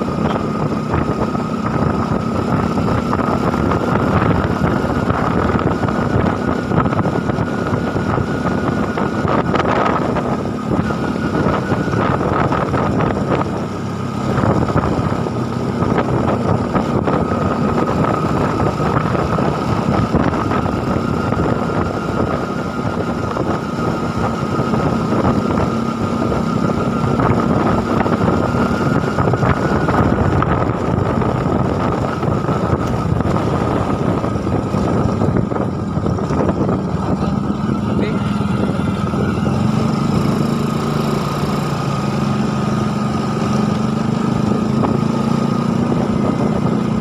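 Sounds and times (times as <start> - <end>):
small engine whining: 0.0 - 47.0
wind on microphone: 0.0 - 47.0.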